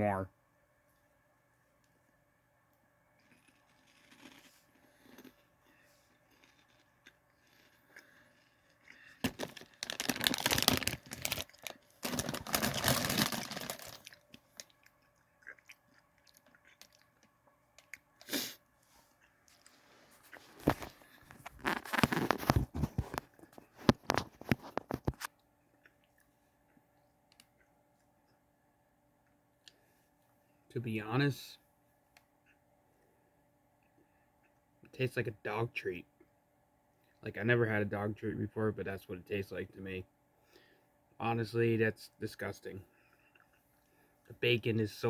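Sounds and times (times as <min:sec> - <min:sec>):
crunching cheese curls: 0:03.1 - 0:18.4, 0:19.0 - 0:28.4.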